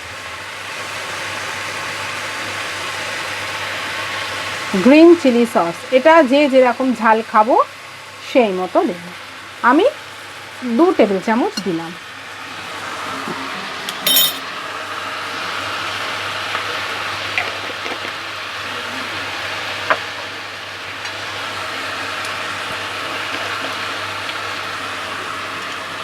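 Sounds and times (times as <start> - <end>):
spoon clinking against pan: 14.0 - 14.4.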